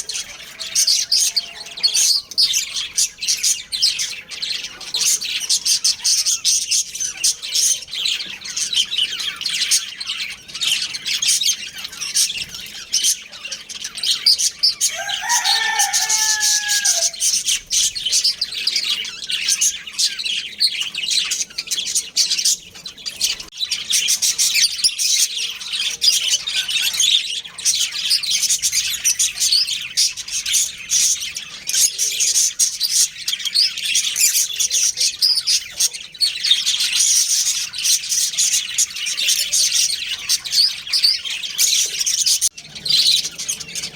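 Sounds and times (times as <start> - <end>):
budgerigars chirping: 0.0 - 43.9
drawn-out two-part bird call: 14.8 - 17.4.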